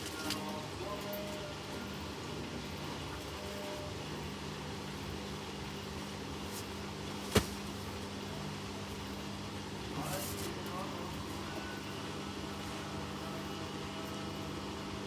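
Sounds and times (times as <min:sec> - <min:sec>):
washing machine humming: 0:00.0 - 0:15.0.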